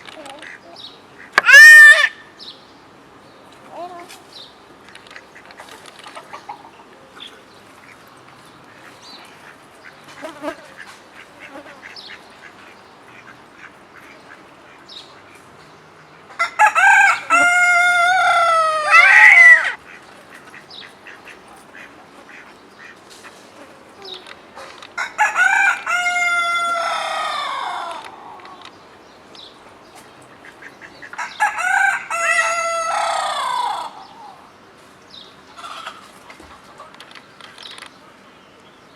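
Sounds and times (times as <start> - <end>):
faint bird calls: 3.4 - 25.0
rooster crowing: 16.4 - 19.8, 25.0 - 28.2, 31.2 - 34.4.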